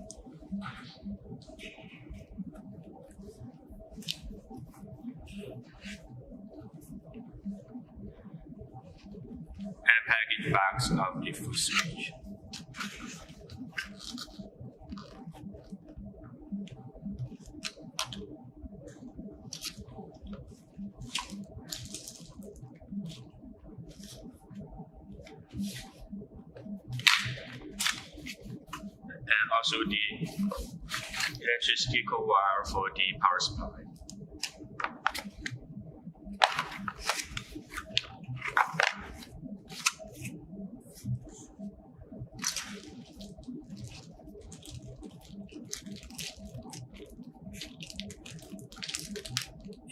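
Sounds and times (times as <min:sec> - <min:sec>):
plastic packaging crinkling: 0:42.4 - 0:46.8, 0:47.6 - 0:49.5.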